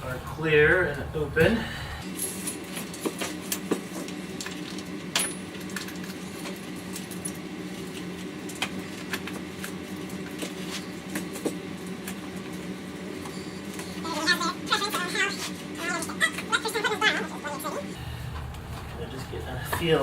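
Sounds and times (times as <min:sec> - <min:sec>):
steady low hum: 0:00.0 - 0:02.9, 0:17.6 - 0:20.0.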